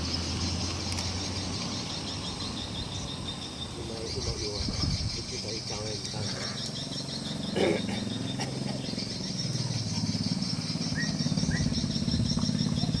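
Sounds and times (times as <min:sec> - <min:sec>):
insects droning: 0:00.0 - 0:13.0
low pulsing rumble: 0:06.8 - 0:13.0.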